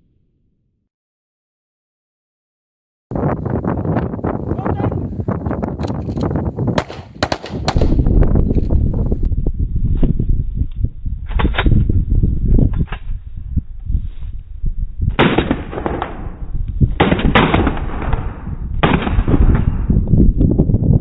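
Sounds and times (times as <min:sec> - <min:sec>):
wind rumble on microphone: 0:03.1 - 0:21.0
pistol shots echoing: 0:06.8 - 0:08.0.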